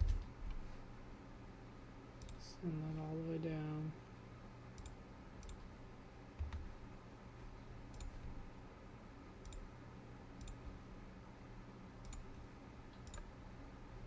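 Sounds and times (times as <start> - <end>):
low steady hum: 0.0 - 14.0
faint computer mouse clicks: 2.2 - 2.4, 4.8 - 5.6, 7.9 - 8.2, 9.4 - 9.6, 10.4 - 10.7, 12.0 - 12.3, 12.9 - 13.3.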